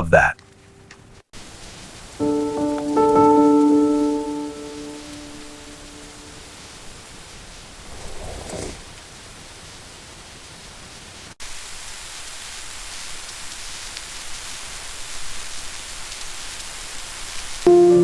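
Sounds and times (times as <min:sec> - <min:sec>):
steady rain hiss: 0:00.1 - 0:18.0.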